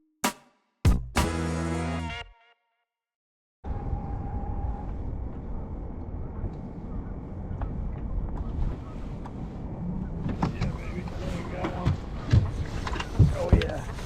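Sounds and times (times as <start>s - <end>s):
wind buffeting microphone: 3.7s - 14.0s.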